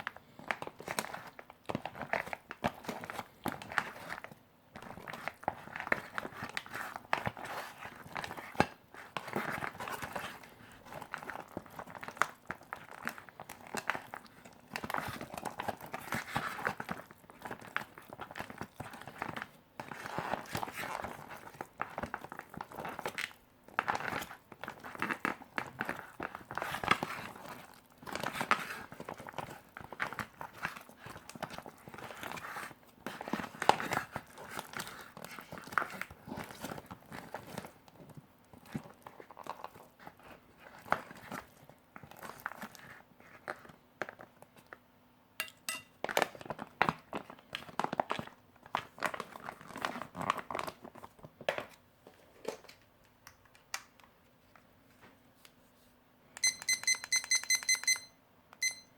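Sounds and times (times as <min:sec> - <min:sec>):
plastic and foil packets crinkling: 0:46.0 - 0:51.8.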